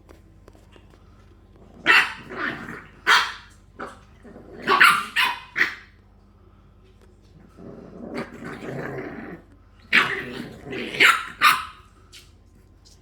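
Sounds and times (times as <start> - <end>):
puppies barking: 1.8 - 6.0, 9.9 - 11.9.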